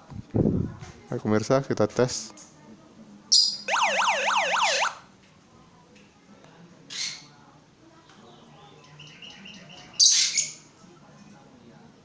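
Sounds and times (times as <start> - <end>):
electronic siren warble: 3.7 - 5.0.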